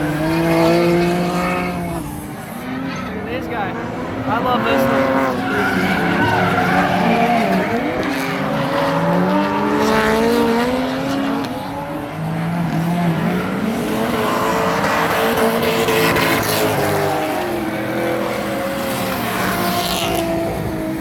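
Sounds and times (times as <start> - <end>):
car engines revving: 0.0 - 21.0
tyres squealing: 4.3 - 8.4.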